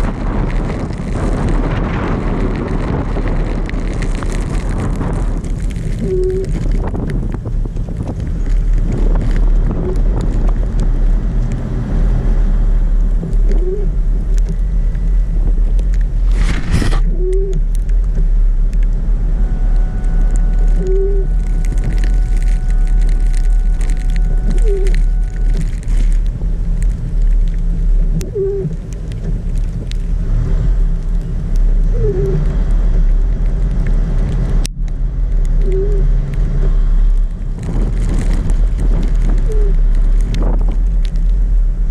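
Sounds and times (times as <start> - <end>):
car engine and road rumble: 0.0 - 41.9
short squeak: 24.4 - 25.6.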